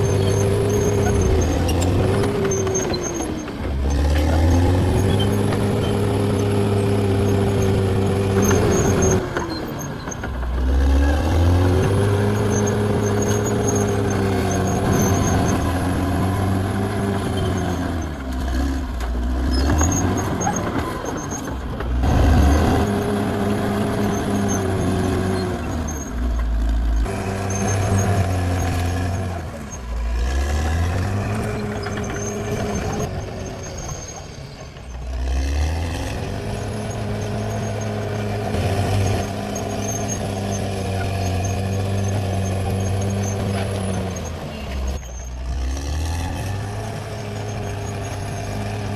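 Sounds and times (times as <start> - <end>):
bulldozer diesel engine under load: 0.0 - 48.9.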